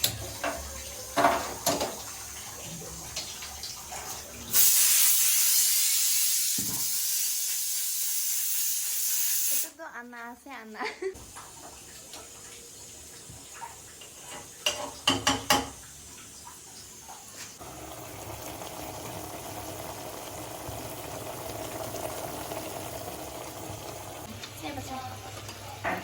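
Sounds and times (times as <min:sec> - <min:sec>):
pots and utensils clattering: 0:00.0 - 0:04.6, 0:13.2 - 0:15.8, 0:25.3 - 0:26.0
water running: 0:00.0 - 0:09.8, 0:10.5 - 0:26.0.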